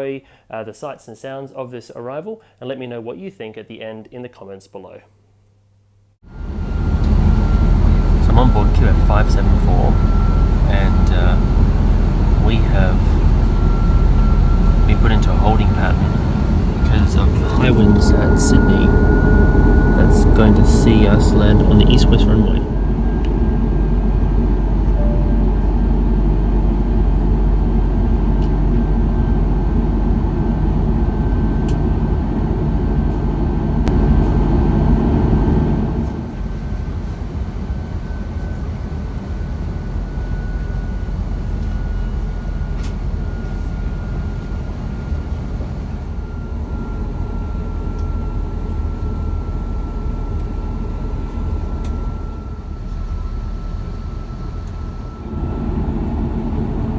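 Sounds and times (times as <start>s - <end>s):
high whine: 6.3s - 36.8s, 46.1s - 56.9s
aircraft cabin engine rumble: 6.3s - 56.9s.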